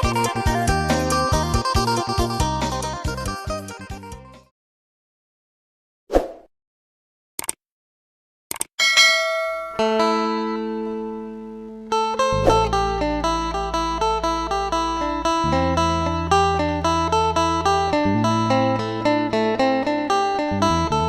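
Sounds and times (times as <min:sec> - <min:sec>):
plucked string music: 0:08.8 - 0:21.0
low bass line: 0:12.3 - 0:21.0.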